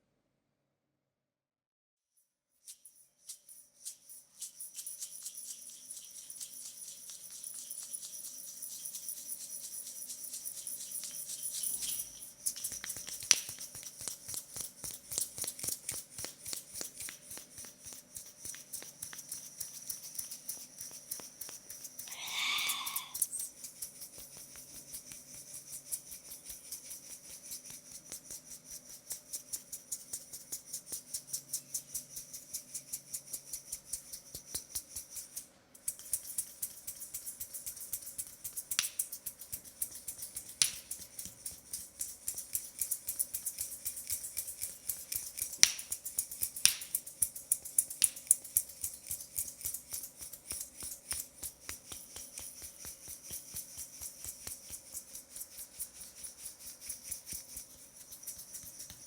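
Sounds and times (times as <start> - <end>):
hands tapping on a leg: 45.6 - 47.0, 49.9 - 55.0.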